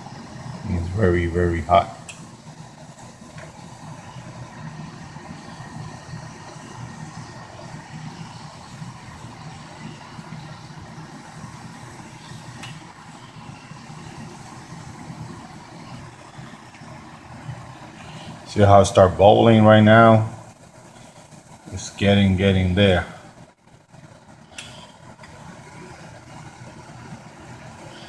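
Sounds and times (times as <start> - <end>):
pot of water rumbling on stove: 0.0 - 28.0.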